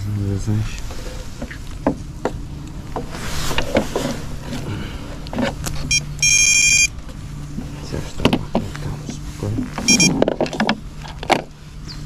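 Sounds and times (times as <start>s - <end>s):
steady low hum: 0.0s - 12.0s
short electronic beep: 5.9s - 6.9s, 9.9s - 10.1s.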